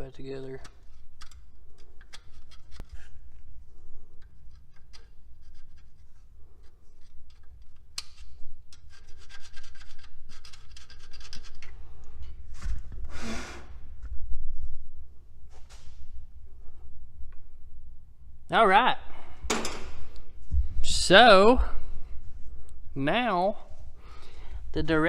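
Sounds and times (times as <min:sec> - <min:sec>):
rubbing and scraping: 0:04.3 - 0:07.8, 0:08.8 - 0:11.7.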